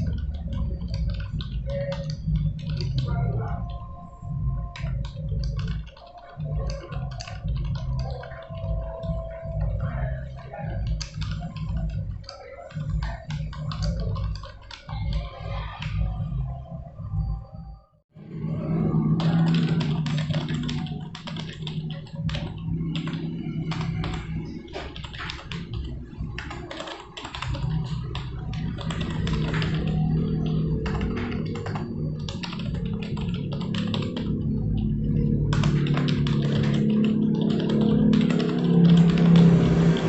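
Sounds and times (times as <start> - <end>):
typing on computer keyboard: 0.0 - 3.8, 4.7 - 9.9, 10.7 - 16.0, 19.0 - 40.0
background music: 0.0 - 40.0.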